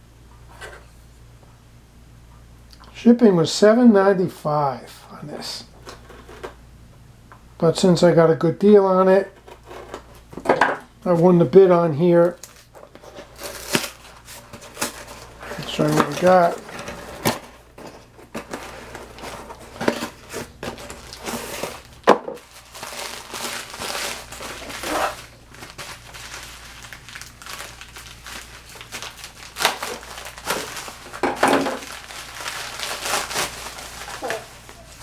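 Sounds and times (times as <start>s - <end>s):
packaging crinkling and rustling: 12.2s - 35.0s.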